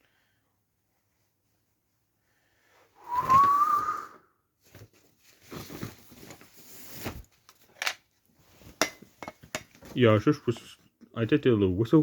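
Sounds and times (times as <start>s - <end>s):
person whistling short note: 3.0s - 4.3s.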